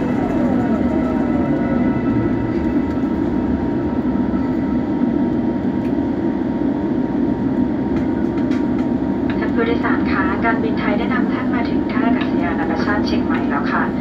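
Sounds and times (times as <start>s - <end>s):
falling whine: 0.0s - 7.7s
aircraft cabin low rumble: 0.0s - 14.0s.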